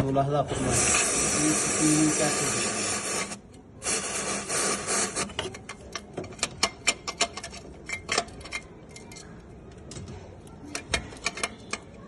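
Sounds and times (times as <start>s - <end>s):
aerosol spray hissing: 0.6s - 5.3s
sharp clicks and scrapes: 2.9s - 12.0s.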